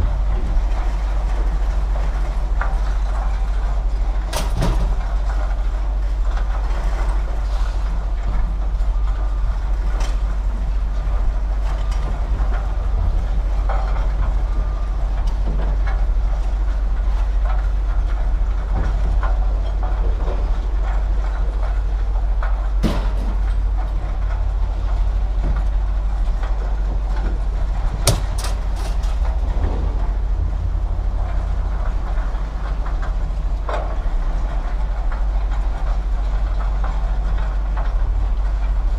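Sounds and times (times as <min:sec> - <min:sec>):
large engine droning: 0:00.0 - 0:38.9
sharp knocks: 0:28.0 - 0:29.8.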